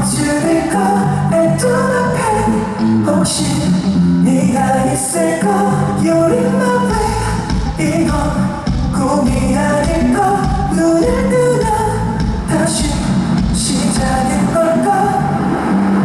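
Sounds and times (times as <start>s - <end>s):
person singing: 0.0s - 16.0s
drum beat: 6.9s - 14.3s
live band instruments: 6.9s - 14.8s.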